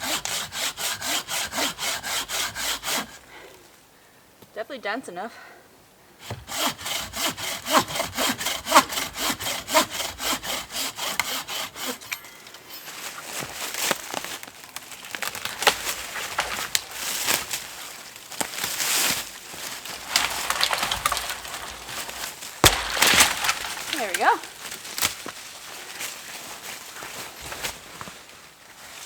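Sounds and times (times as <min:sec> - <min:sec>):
bucksaw cutting wood: 0:00.0 - 0:03.2, 0:06.2 - 0:12.4, 0:15.0 - 0:25.3
wood cracking: 0:06.6 - 0:25.9.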